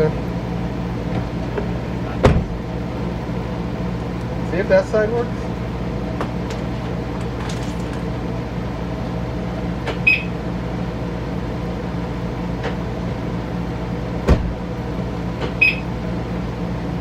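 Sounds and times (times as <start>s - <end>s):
car door thump: 2.2s - 2.6s, 14.2s - 14.6s.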